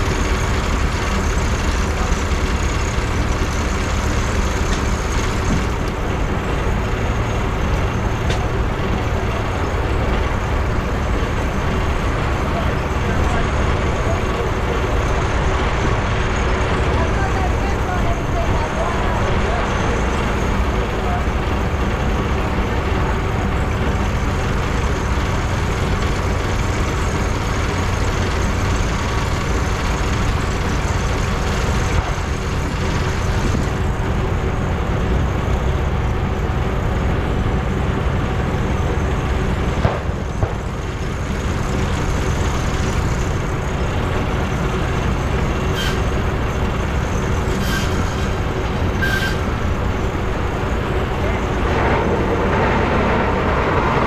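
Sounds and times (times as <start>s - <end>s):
steam engine driving sawmill: 0.0s - 54.0s
short high tones: 49.0s - 49.5s.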